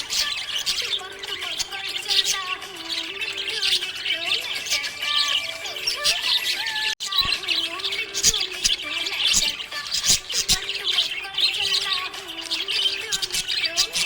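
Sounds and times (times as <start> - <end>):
budgerigar chirping and warbling: 0.0 - 14.0.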